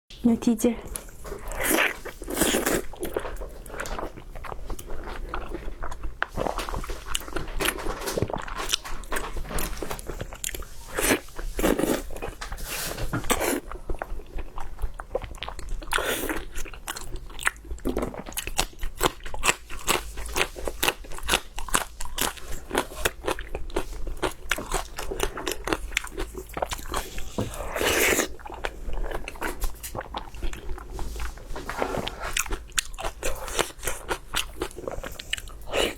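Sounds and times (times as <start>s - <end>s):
crunchy chewing close up: 0.9s - 35.9s.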